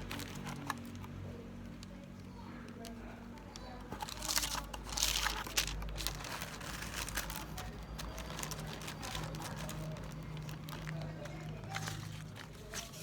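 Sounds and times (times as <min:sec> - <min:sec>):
packaging crinkling: 0:00.0 - 0:01.1, 0:03.9 - 0:13.0.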